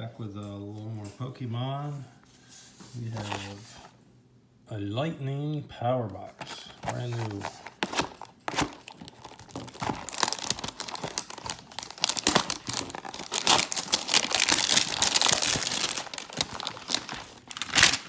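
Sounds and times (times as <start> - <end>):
packaging crinkling and tearing: 6.4 - 18.0.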